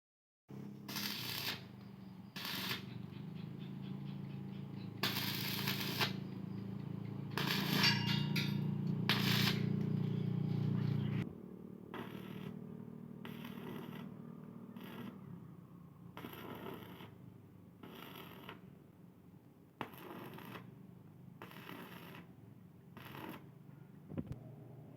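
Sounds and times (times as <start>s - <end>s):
steady low hum: 0.5s - 16.2s
fireworks crackling and popping: 0.9s - 1.8s, 2.4s - 2.9s, 5.0s - 6.2s, 7.4s - 8.1s, 9.0s - 9.8s.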